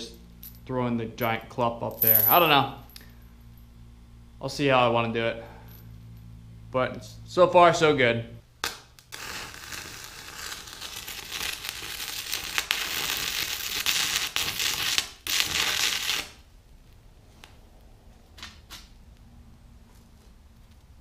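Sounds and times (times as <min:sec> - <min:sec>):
welding arc crackling hiss: 0:08.6 - 0:16.5.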